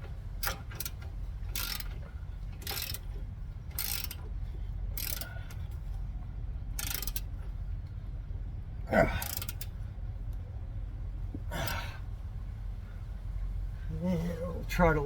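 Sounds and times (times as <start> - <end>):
steady low hum: 0.0 - 15.0
ratchet wrench clicking: 0.4 - 2.0, 2.6 - 3.1, 3.7 - 4.3, 5.0 - 5.6, 6.8 - 7.3, 9.2 - 9.7.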